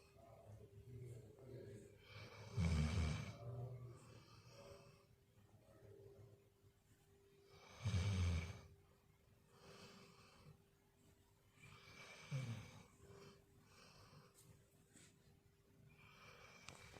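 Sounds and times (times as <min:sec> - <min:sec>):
dog snoring: 0:02.0 - 0:03.4, 0:07.5 - 0:08.7, 0:11.7 - 0:14.3.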